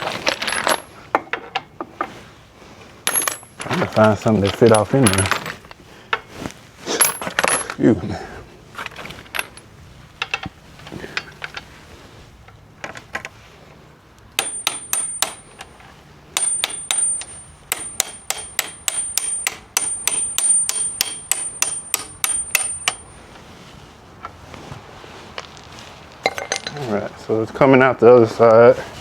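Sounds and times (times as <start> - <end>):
tools clicking and knocking: 3.1 - 6.3, 8.8 - 11.6, 14.4 - 15.8, 16.4 - 23.1
hammer tapping on metal: 16.4 - 23.1.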